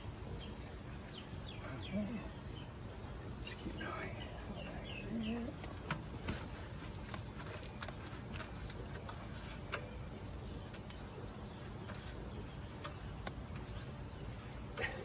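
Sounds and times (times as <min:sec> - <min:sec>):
hand spreading wet mortar: 0:05.4 - 0:15.0.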